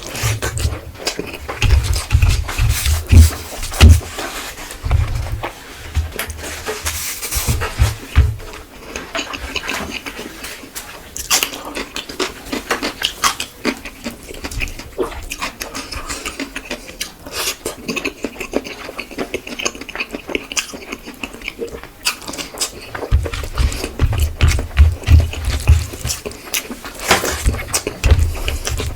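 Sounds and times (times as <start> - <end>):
dull low thumps: 7.5 - 8.5, 23.1 - 26.3
person chewing and lip-smacking: 11.2 - 28.9.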